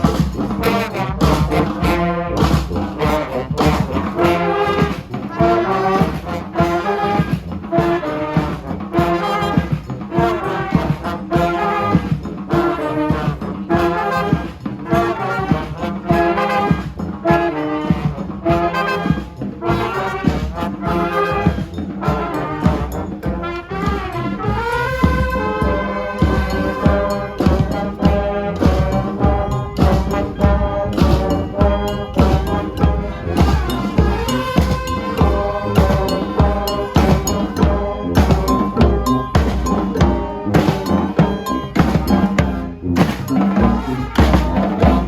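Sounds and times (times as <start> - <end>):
brass band playing afrobeat: 0.0 - 45.0.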